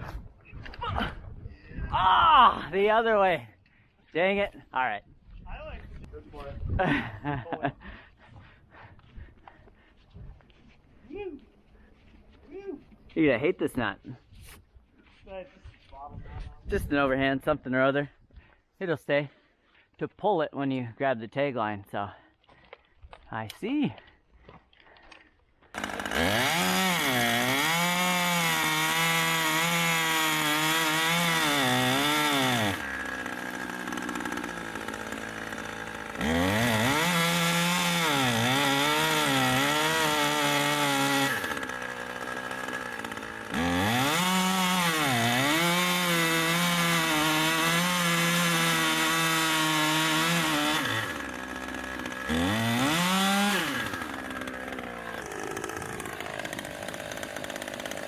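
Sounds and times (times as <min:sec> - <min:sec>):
chainsaw cutting wood: 0:25.7 - 0:58.0.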